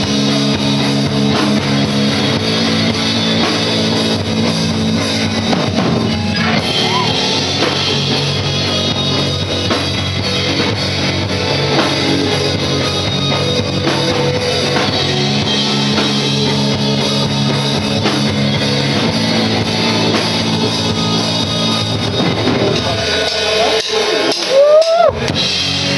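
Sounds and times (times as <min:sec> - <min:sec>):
heavy rock band playing: 0:00.0 - 0:25.9
short rising guitar note: 0:05.5 - 0:09.5.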